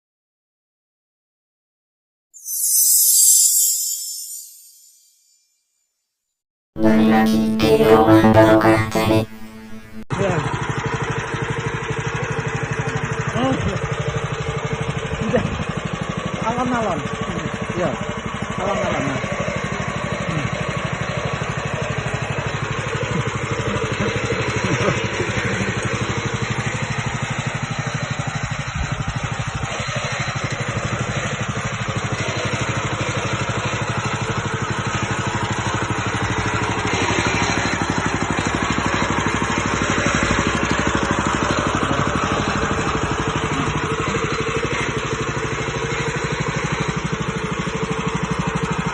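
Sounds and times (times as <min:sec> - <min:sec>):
small petrol engine running: 0:10.1 - 0:48.9.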